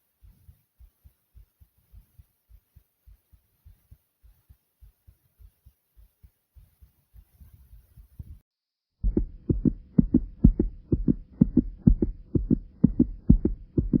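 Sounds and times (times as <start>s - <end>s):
heartbeat thumps: 9.0s - 14.0s.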